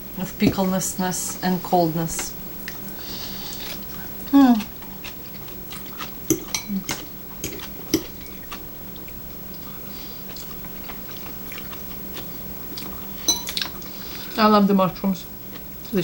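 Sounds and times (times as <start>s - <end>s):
person chewing: 2.6s - 13.9s
utensils clicking against dishes: 6.3s - 8.4s.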